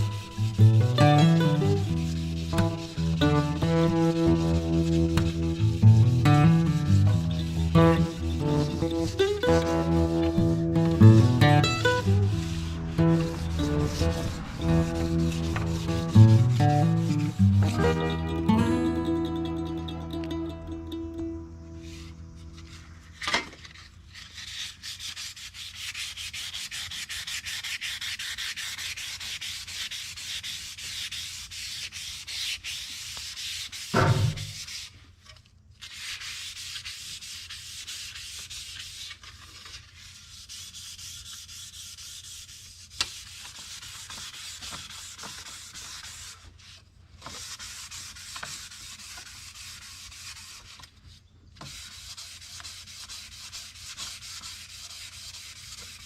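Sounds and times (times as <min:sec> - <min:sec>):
sandpaper rubbing on metal: 0:00.0 - 0:18.2, 0:21.8 - 0:56.0
loud thump: 0:34.0 - 0:34.6.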